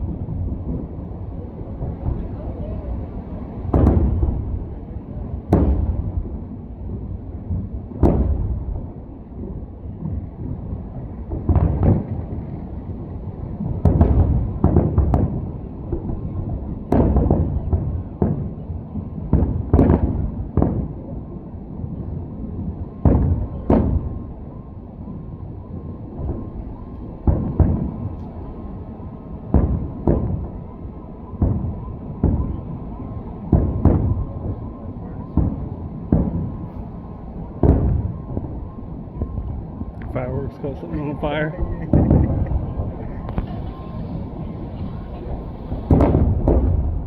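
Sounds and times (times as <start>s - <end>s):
fireworks booming: 0.0s - 47.0s
low rumble: 0.0s - 47.0s.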